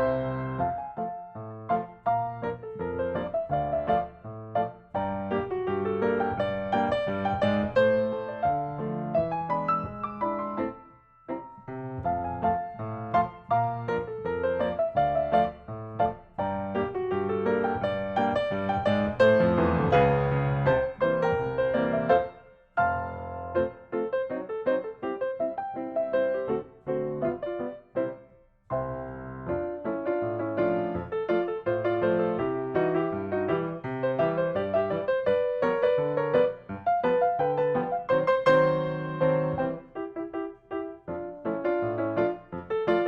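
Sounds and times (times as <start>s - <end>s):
keyboard melody: 0.0s - 28.2s
piano music: 0.0s - 43.0s.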